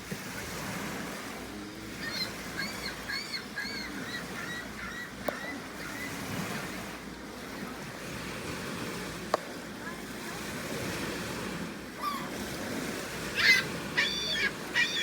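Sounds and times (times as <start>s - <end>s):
surf: 0.0s - 15.0s
wind: 0.0s - 15.0s
gulls calling: 1.9s - 6.8s, 11.9s - 15.0s.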